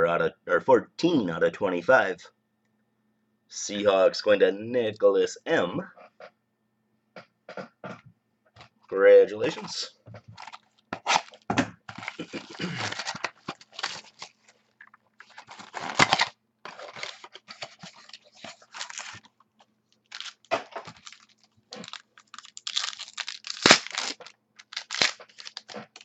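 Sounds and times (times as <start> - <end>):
cards rustling: 10.4 - 26.0
wrapper crinkling and tearing: 10.4 - 26.0.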